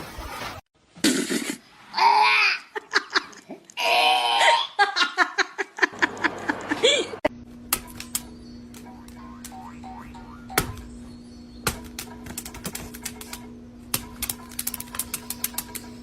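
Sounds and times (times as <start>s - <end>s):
person laughing: 2.4s - 7.3s
steady hum: 5.9s - 16.0s.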